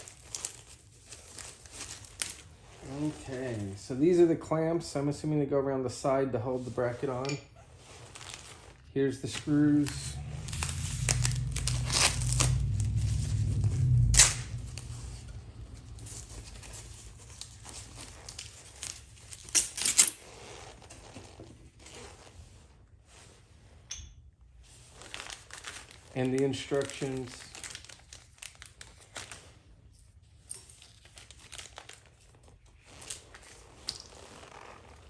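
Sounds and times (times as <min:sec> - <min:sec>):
packaging rustling and tearing: 0:00.0 - 0:04.2, 0:07.7 - 0:22.3, 0:24.8 - 0:35.0.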